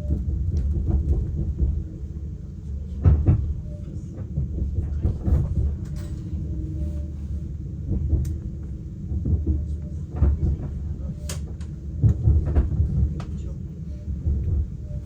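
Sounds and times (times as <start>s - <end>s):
train carriage rumble: 0.0s - 15.0s.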